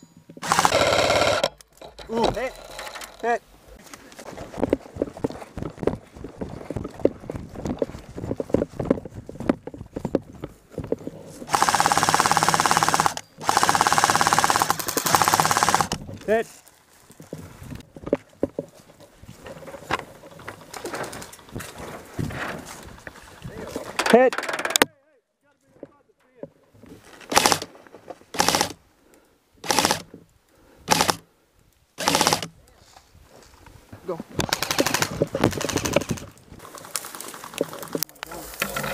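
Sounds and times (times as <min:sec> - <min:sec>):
gear rustling and knocking: 0:00.3 - 0:12.0, 0:34.4 - 0:38.9
airsoft gun firing full auto: 0:00.4 - 0:01.5, 0:11.5 - 0:16.0, 0:27.3 - 0:27.7, 0:28.4 - 0:28.8, 0:29.6 - 0:30.0, 0:30.9 - 0:31.2, 0:32.0 - 0:32.5, 0:34.5 - 0:36.2.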